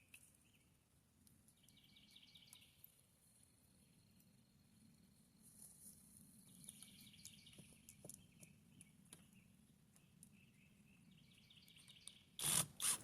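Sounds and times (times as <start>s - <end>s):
small bird chirps: 1.5s - 3.0s, 6.4s - 12.4s.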